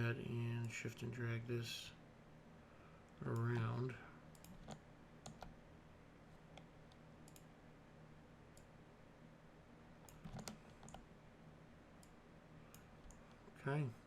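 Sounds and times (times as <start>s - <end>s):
keyboard clicks: 4.3s - 5.5s, 6.4s - 7.5s, 10.0s - 11.0s
computer mouse clicks: 4.3s - 5.6s, 6.4s - 7.5s, 10.0s - 11.1s, 12.0s - 13.5s.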